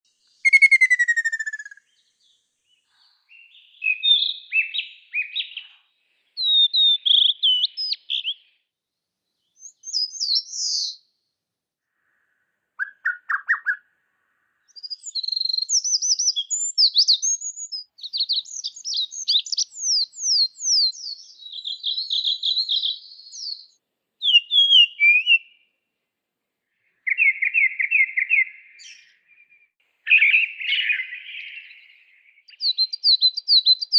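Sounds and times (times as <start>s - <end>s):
songbird whistles and trills: 0.1s - 8.6s, 9.4s - 11.1s, 12.8s - 13.9s, 14.7s - 25.7s, 27.0s - 33.9s.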